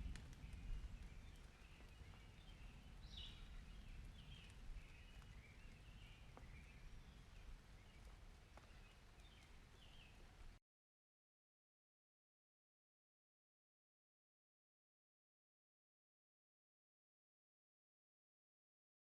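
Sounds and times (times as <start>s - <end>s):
birds chirping: 0.4s - 10.5s
faint ticks: 8.0s - 10.5s.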